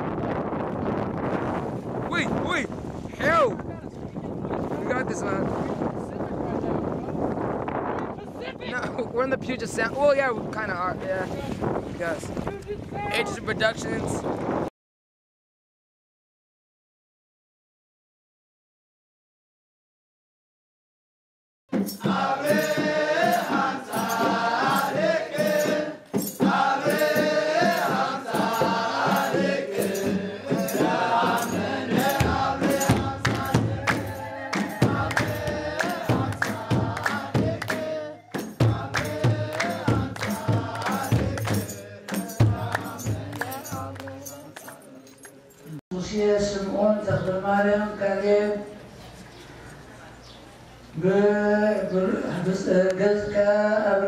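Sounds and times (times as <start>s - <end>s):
steady percussion beat: 21.7s - 44.8s
choral singing: 21.8s - 45.8s.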